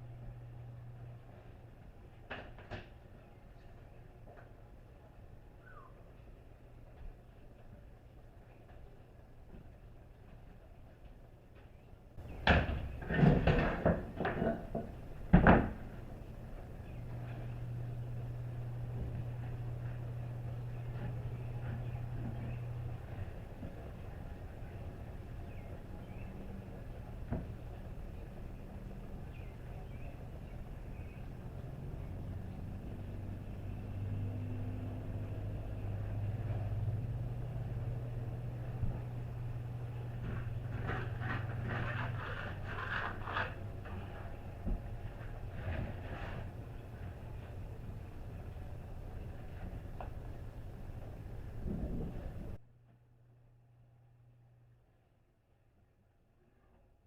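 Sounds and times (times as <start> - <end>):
low engine hum: 0.0 - 2.3, 12.2 - 54.8
knocks and clattering thumps: 12.2 - 15.9.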